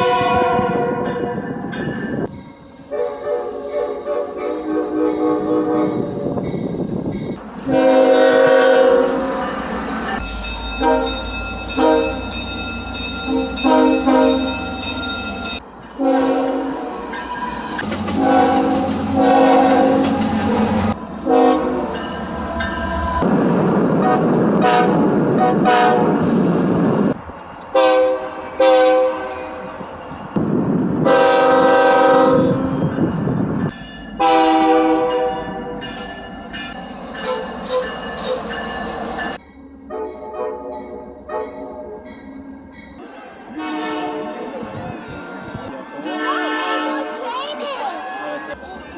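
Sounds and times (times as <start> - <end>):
locomotive chord horns: 0.0 - 1.4, 2.9 - 6.3, 7.6 - 26.2, 27.7 - 29.6, 31.0 - 32.8, 34.2 - 35.7, 43.0 - 44.6, 45.8 - 47.2
passing train clatter: 0.0 - 48.9.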